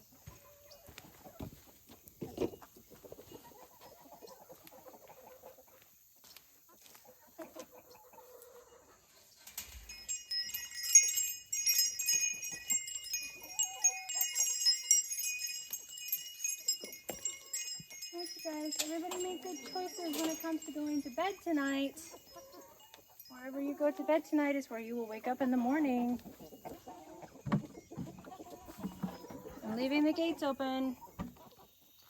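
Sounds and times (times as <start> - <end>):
faint chicken clucking: 0.0 - 9.4, 21.9 - 24.4, 26.1 - 32.0
wind chimes tinkling: 3.2 - 4.8, 8.7 - 31.2.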